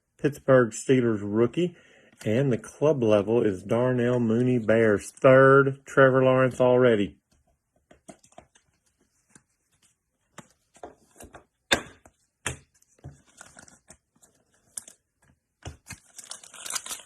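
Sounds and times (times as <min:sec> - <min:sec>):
cards rustling: 0:08.0 - 0:11.4, 0:12.7 - 0:17.0.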